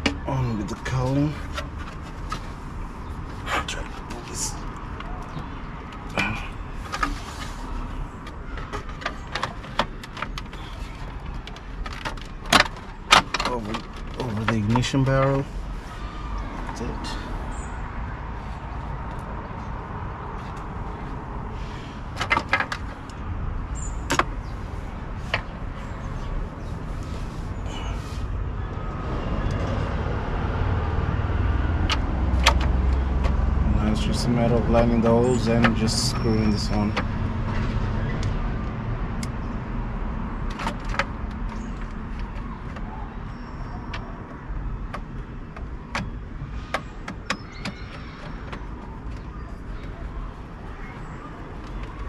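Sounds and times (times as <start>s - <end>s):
plastic trim clicking and knocking: 8.2s - 14.8s, 22.2s - 23.2s, 43.8s - 50.0s.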